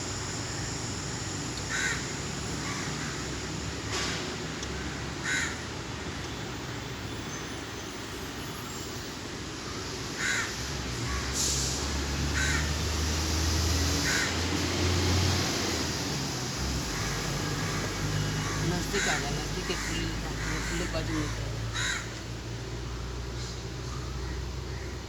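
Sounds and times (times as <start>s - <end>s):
bird calling: 16.8s - 22.2s.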